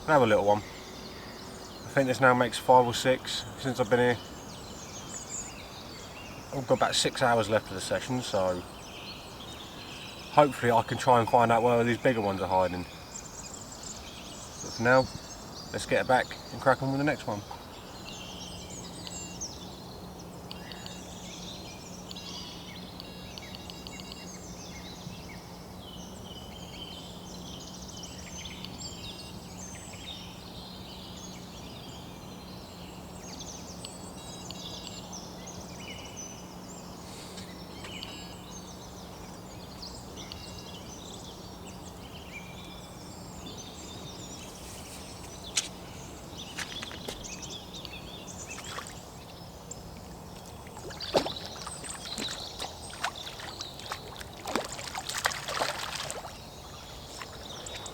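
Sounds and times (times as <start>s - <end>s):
birds chirping and warbling: 0.0s - 57.9s
steady low hum: 17.4s - 57.9s.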